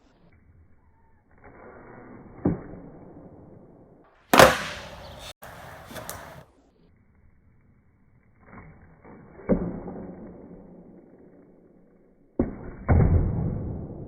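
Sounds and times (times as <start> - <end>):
hard knocks or slams: 4.3 - 5.3.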